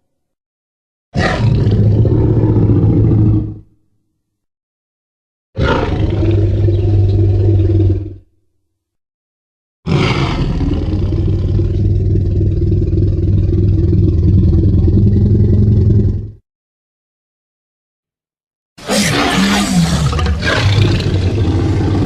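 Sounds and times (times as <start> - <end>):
low rumbling dinosaur growl: 1.2 - 3.7, 5.6 - 8.3, 9.9 - 16.4, 18.8 - 22.0.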